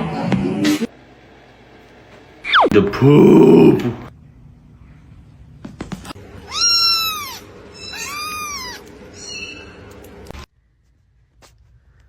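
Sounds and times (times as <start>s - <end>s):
cat meowing: 6.4s - 9.8s.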